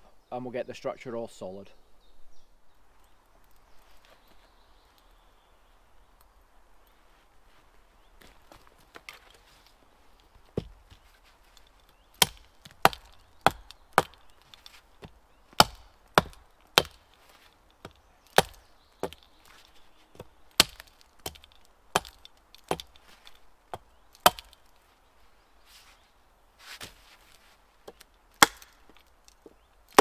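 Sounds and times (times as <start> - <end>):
wood chopping blows: 12.2 - 19.6, 20.2 - 24.7, 27.9 - 29.1.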